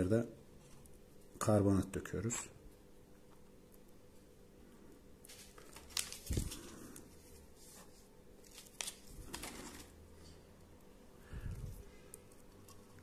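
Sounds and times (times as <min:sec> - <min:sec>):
packet rustling: 0:05.3 - 0:07.4, 0:08.4 - 0:10.0.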